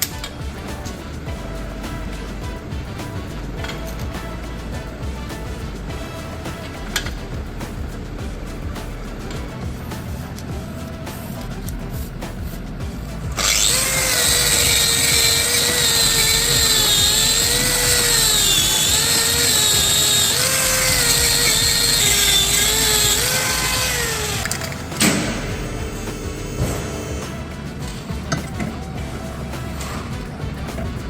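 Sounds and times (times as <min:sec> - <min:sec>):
power tool running: 0:13.3 - 0:28.4.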